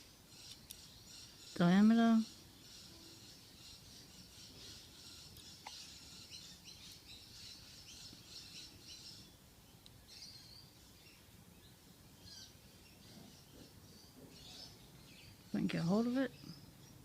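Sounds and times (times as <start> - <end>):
faint bird chirping: 0.0 - 17.0.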